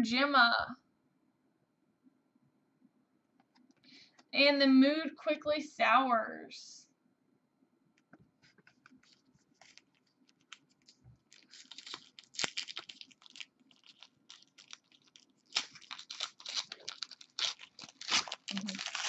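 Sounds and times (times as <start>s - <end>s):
wrapper crinkling: 8.9s - 19.0s.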